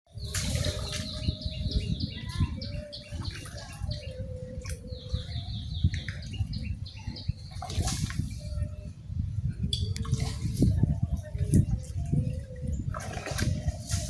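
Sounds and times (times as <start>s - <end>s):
birds chirping: 0.1s - 9.0s.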